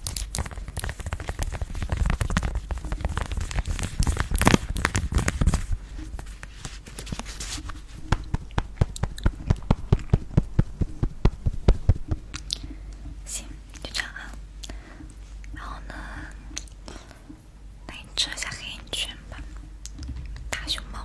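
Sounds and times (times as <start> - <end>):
crisp tapping clicks: 0.0 - 12.6.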